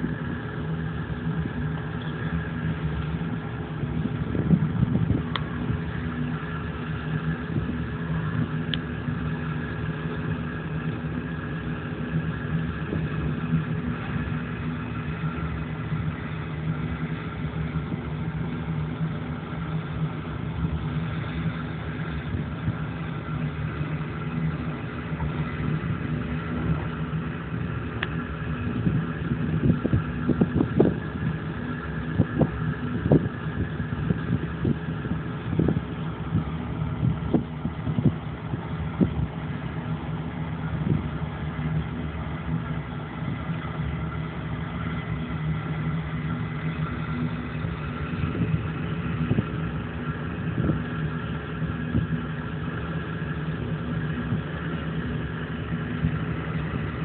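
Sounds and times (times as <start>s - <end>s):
motor engine running: 0.0s - 57.0s.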